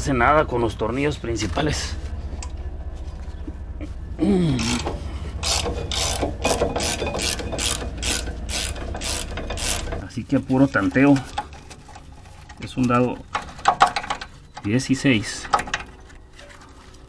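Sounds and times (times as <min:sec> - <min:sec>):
ratchet wrench clicking: 0:04.6 - 0:10.0.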